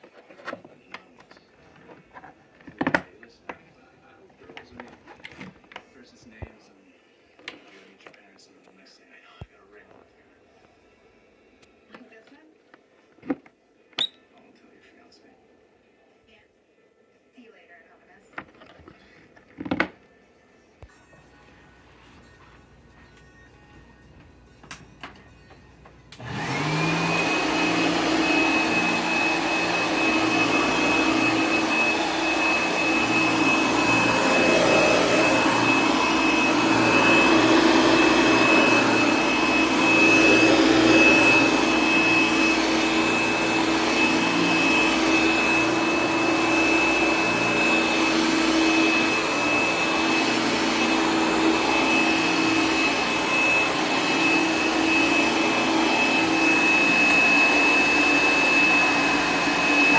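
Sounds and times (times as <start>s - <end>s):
vacuum cleaner motor whining: 25.8s - 59.9s.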